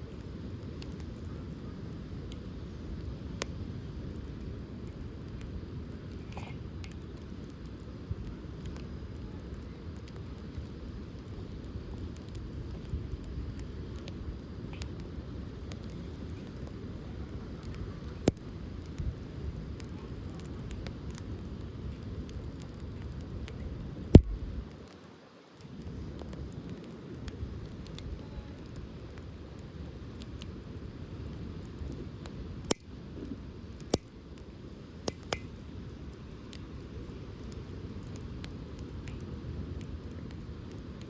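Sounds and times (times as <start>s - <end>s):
burning wood popping: 0.0s - 41.0s
campfire burning: 0.0s - 41.0s.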